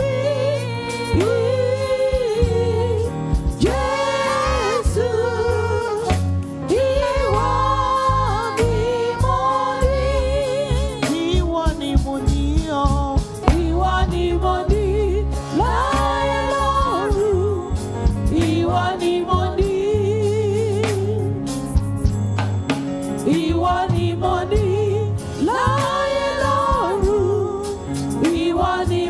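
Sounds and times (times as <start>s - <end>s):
voices singing gospel: 0.0s - 21.4s, 23.1s - 29.0s
musical accompaniment with beat: 0.0s - 29.0s.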